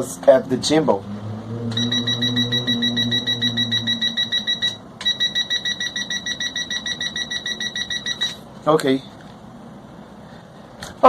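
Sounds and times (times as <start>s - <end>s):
low steady hum: 1.2s - 11.0s
rapid electronic warning beeps: 1.7s - 8.4s.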